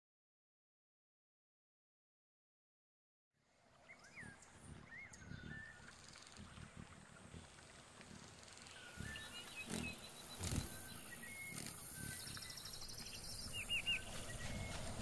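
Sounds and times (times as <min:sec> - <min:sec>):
birds chirping and trilling: 0:03.7 - 0:15.0.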